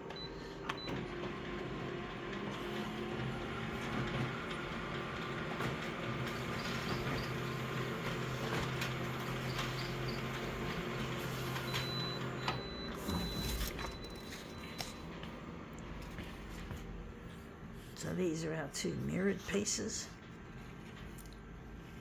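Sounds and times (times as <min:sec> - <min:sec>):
photocopier motor hum: 0:00.0 - 0:17.9.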